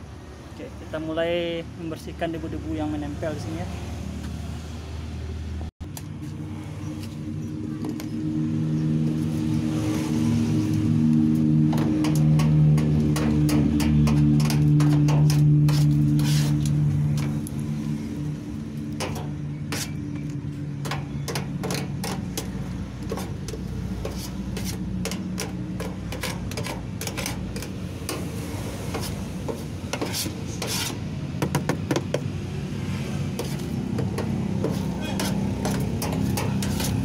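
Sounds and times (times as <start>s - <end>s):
scraping and brushing inside drum: 11.6s - 17.5s, 21.0s - 31.0s, 33.4s - 37.0s.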